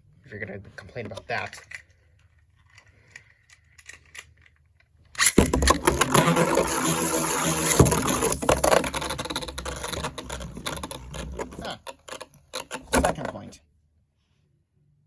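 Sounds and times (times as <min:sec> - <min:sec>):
spinning tops whirring scrape: 0:05.2 - 0:13.5.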